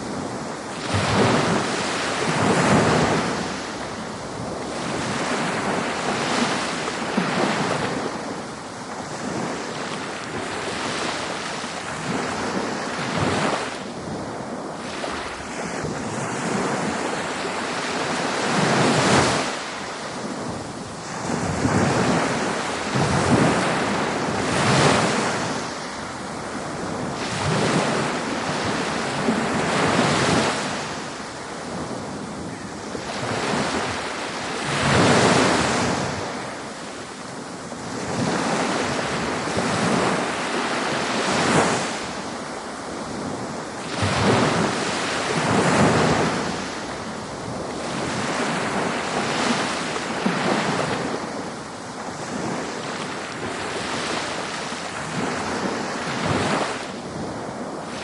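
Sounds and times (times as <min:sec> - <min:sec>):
ocean waves breaking on beach: 0:00.0 - 0:58.0
wind noise on microphone: 0:00.0 - 0:58.0.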